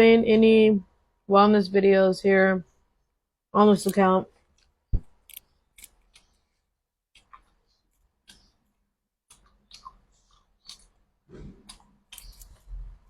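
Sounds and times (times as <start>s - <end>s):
person eating with clicks and smacks: 4.4s - 6.5s, 7.1s - 13.0s.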